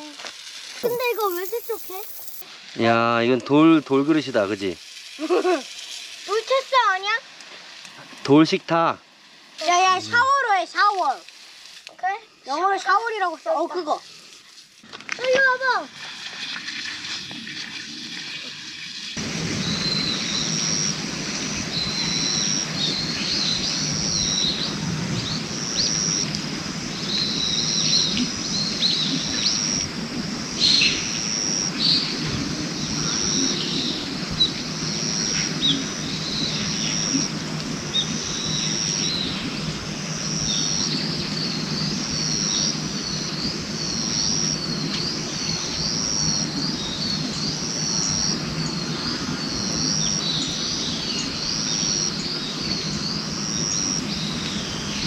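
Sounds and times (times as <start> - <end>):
birds chirping: 0.8 - 2.4, 19.2 - 55.0.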